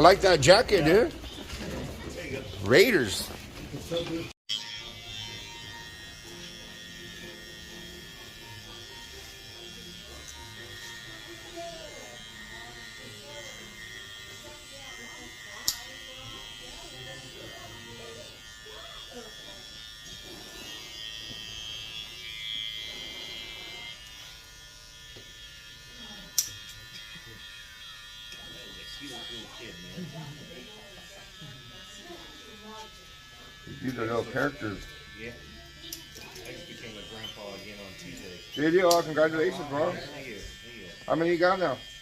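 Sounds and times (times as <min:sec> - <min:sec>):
faint background music: 0:00.0 - 0:19.3
electric hair clippers buzzing: 0:00.0 - 0:42.0.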